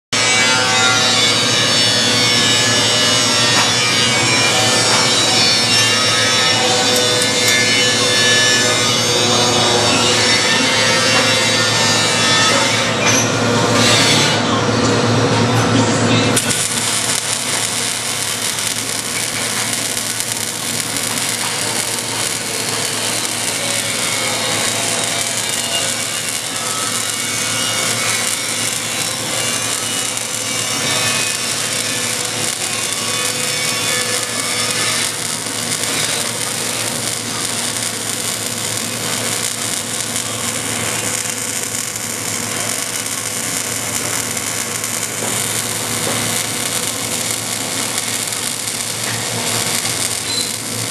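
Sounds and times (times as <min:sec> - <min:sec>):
arc welding buzz: 0:00.1 - 0:50.9.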